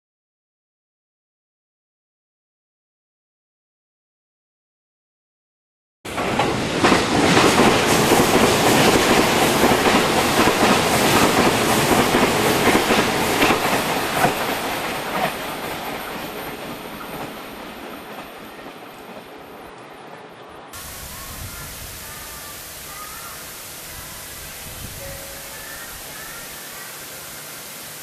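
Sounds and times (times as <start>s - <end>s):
train wheels clattering over rails: 6.1s - 19.8s.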